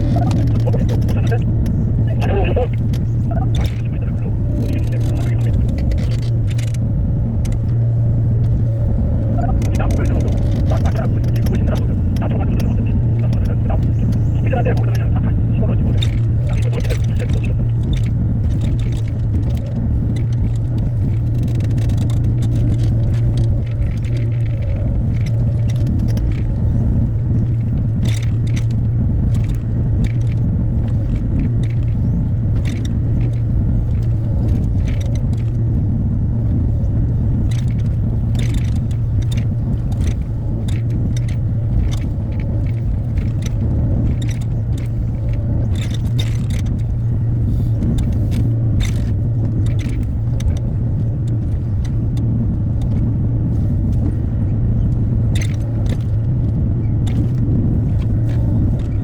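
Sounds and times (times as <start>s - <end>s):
excavator diesel engine running: 0.0s - 52.9s
machine clicks and scrapes: 37.4s - 54.2s, 54.9s - 59.0s.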